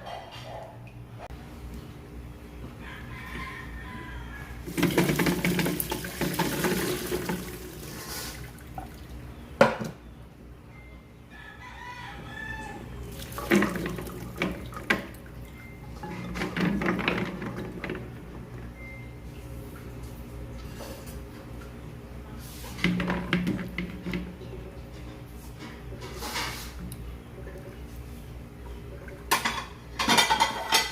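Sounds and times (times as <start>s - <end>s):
rooster crowing faintly: 2.7s - 4.7s, 11.3s - 13.1s
water splashing and pouring: 4.7s - 9.0s, 13.1s - 14.9s.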